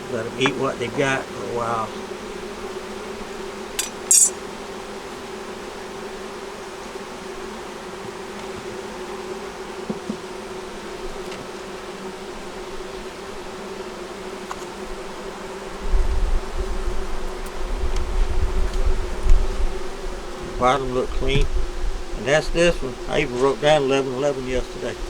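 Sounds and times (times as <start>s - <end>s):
honey bees buzzing: 0.0s - 25.0s.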